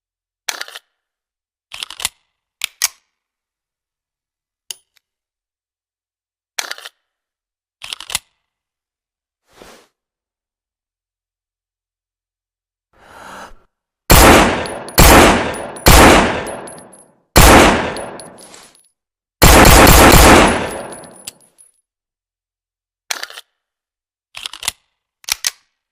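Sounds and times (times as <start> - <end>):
pistol shots with ringing tail: 14.1 - 18.4, 19.4 - 21.3.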